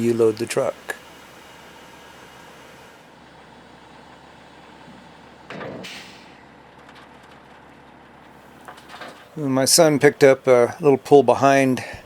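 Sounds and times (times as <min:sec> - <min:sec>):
heavy diesel engine running: 0:00.0 - 0:12.0
loud hiss of air: 0:05.8 - 0:06.4.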